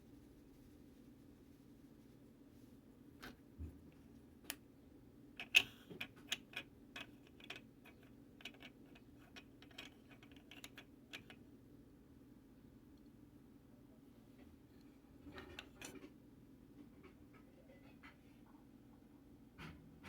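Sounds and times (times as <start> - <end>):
faint steady hum: 0.0 - 20.0
plastic parts clicking and tapping: 5.4 - 11.4.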